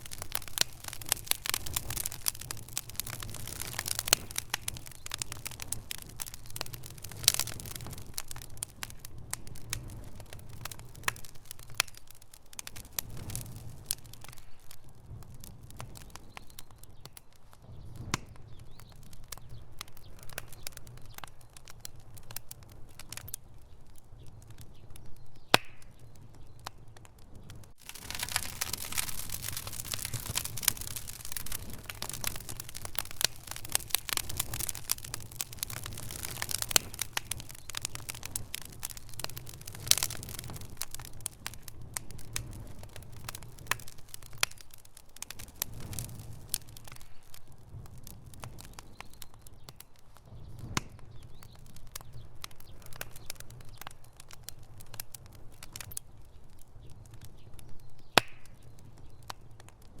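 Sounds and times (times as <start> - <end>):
flames rumbling: 0.0 - 60.0
wood fire crackling and popping: 0.0 - 60.0.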